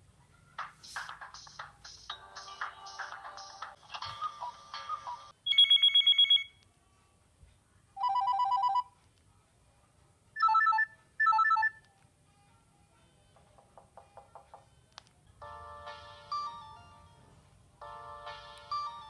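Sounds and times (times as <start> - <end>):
polyphonic ringtone tune: 0.9 - 6.5, 15.4 - 17.2, 17.8 - 19.0.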